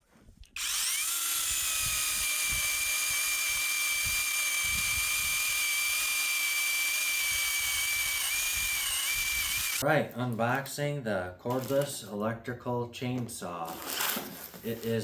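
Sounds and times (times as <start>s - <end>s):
electric chainsaw motor whining: 0.6s - 9.8s.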